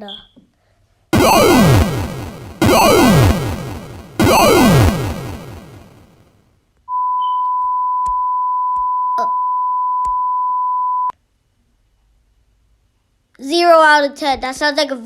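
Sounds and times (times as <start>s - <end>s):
steady alarm beep tone: 1.2s - 6.0s.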